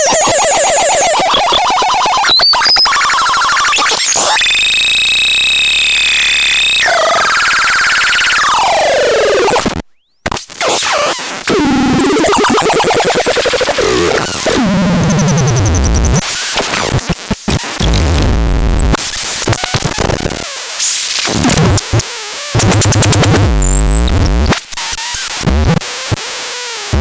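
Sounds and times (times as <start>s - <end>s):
synthesizer noisy sounds: 0.0s - 9.7s, 10.6s - 16.9s.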